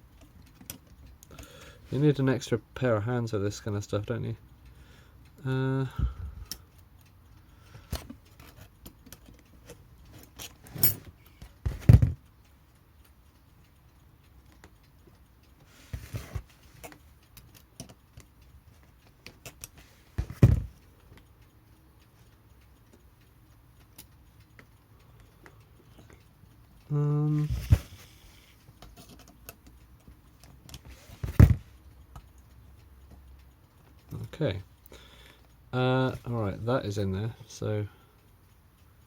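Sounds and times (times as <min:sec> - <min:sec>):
small tools clicking on metal parts: 0:16.6 - 0:20.3, 0:28.6 - 0:35.3.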